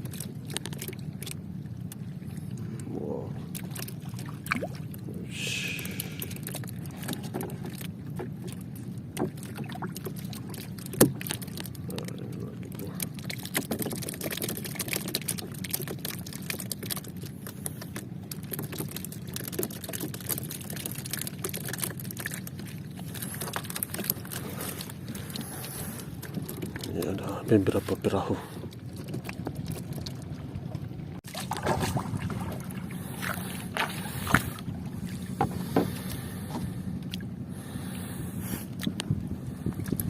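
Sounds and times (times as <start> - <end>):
water slapping a boat hull: 0.0 - 40.0.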